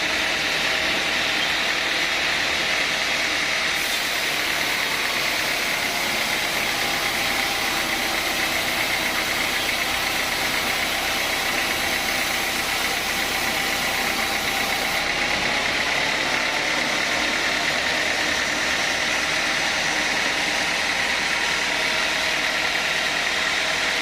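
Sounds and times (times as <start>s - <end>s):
sawmill saw cutting wood: 0.0s - 24.0s.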